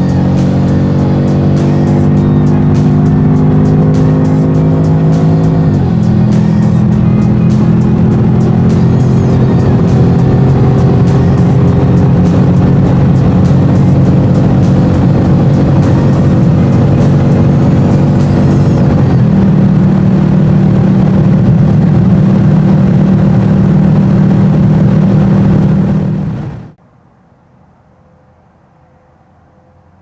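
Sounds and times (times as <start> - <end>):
car engine accelerating hard: 0.0 - 26.8.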